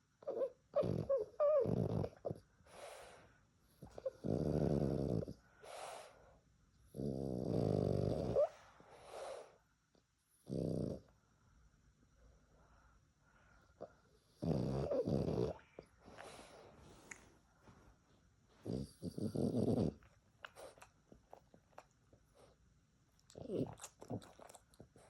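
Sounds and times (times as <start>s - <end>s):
dog snoring: 0.2s - 3.0s, 3.8s - 6.2s, 6.9s - 9.5s, 10.4s - 11.2s, 13.8s - 16.6s, 18.6s - 20.1s.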